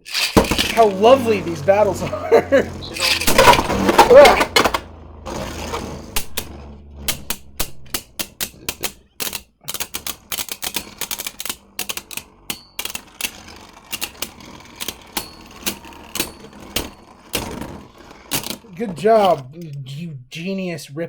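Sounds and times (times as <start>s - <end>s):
spinning tops clashing: 0.0s - 1.7s, 2.7s - 4.9s, 6.1s - 18.6s.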